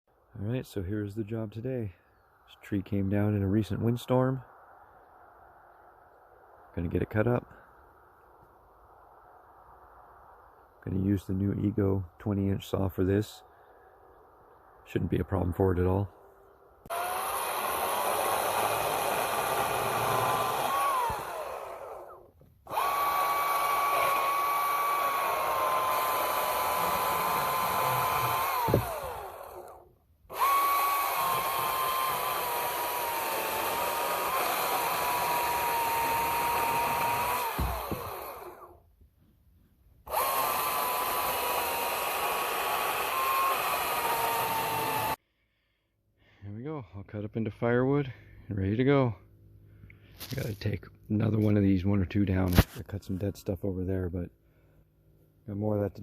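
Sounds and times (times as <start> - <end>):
electric chainsaw cutting wood: 16.9 - 38.8, 40.1 - 45.2.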